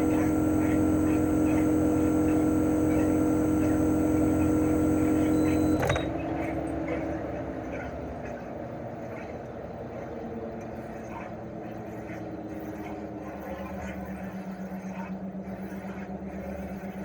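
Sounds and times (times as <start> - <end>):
air conditioner outdoor unit humming: 0.0 - 10.6.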